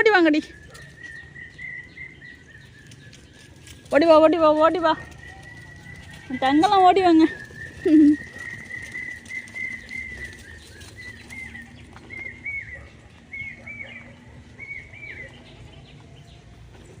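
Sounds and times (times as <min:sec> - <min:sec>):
bird whistling calls: 0:00.2 - 0:03.4, 0:07.2 - 0:15.7.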